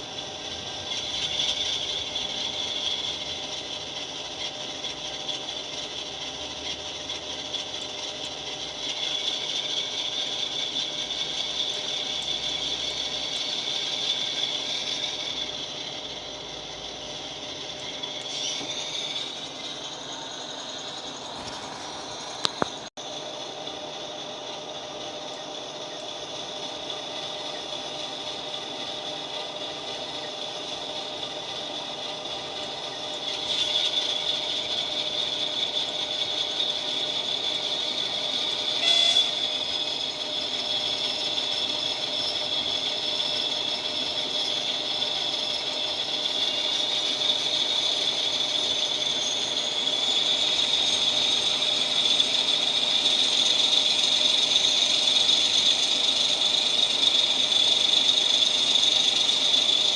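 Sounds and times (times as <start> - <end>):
diesel locomotive engine: 0.0 - 59.9
loud horn blast: 38.8 - 39.4.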